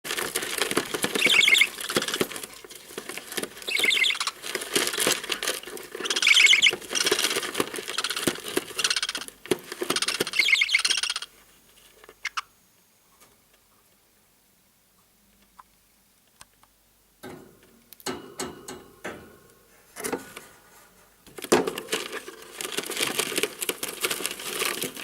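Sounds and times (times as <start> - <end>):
scratchy rustling: 0.1 - 10.5
nestlings calling harshly: 0.9 - 2.5, 3.6 - 11.3, 12.2 - 12.5.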